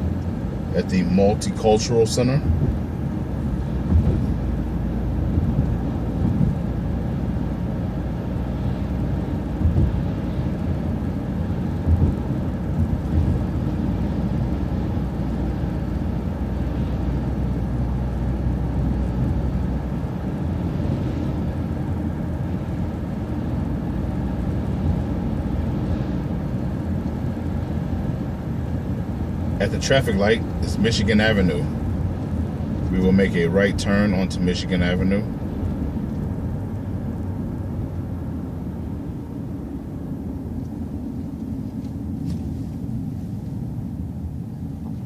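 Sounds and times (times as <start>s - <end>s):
bus engine and road rumble: 0.0s - 45.0s
thumps from road bumps: 2.4s - 6.9s, 9.4s - 11.0s, 11.7s - 14.0s.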